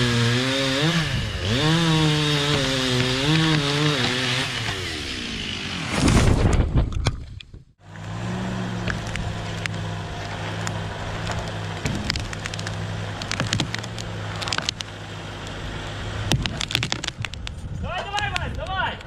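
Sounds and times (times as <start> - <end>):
wood splintering: 0.0 - 7.4, 8.0 - 18.6
engine running steadily: 7.8 - 17.8.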